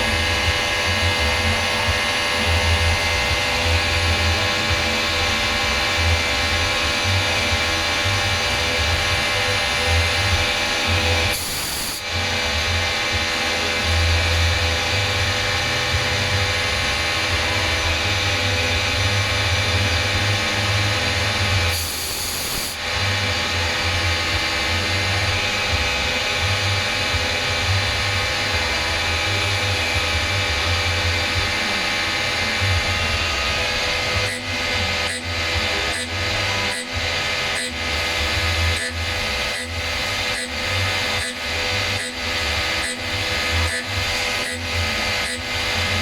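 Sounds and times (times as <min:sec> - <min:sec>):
cnc machine whine: 0:00.0 - 0:46.0
pulsing low hum: 0:00.0 - 0:46.0.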